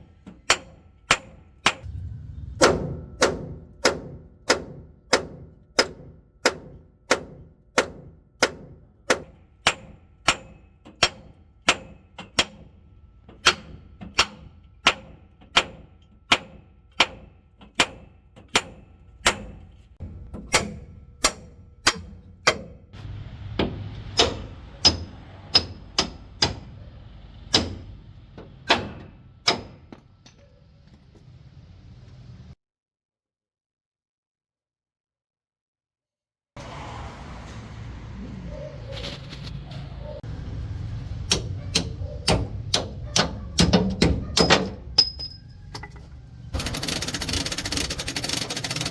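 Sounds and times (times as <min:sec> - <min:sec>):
hammer striking metal: 0:00.3 - 0:12.7, 0:13.3 - 0:22.8, 0:23.6 - 0:26.8, 0:27.5 - 0:28.0, 0:28.6 - 0:30.4, 0:41.2 - 0:46.0.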